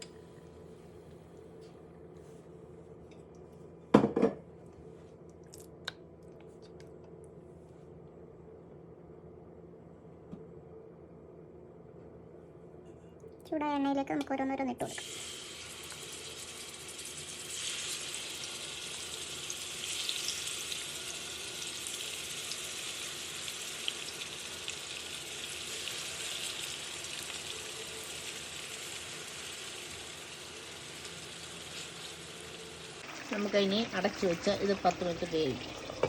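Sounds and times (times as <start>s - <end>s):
chicken sizzling in hot oil: 14.9s - 36.0s.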